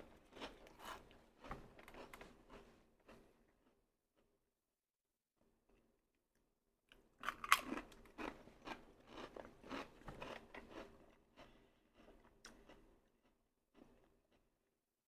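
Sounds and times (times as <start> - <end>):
person chewing crunchy food: 0.0 - 3.8, 6.9 - 14.6.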